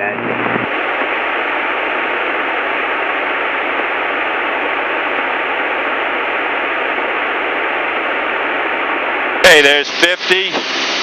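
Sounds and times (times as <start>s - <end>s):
faint steady whine: 0.0s - 11.0s
steady rushing hiss: 0.6s - 11.0s.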